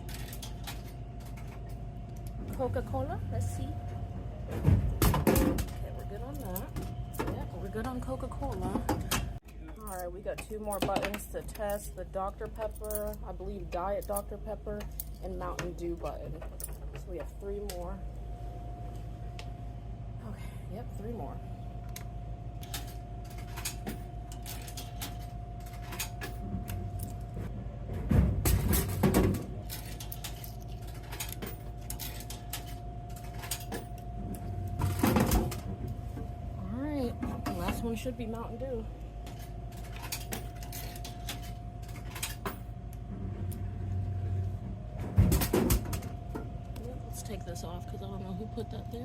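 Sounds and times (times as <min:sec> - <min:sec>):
vending machine humming: 0:00.0 - 0:49.0
loud clunk and rattle: 0:03.9 - 0:05.8, 0:27.3 - 0:30.4, 0:44.6 - 0:46.5.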